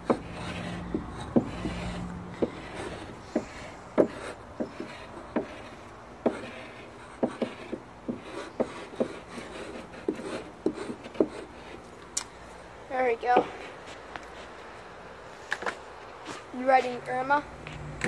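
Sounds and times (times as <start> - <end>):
chalk tapping and scratching on wood: 0.0 - 12.2, 13.2 - 14.7.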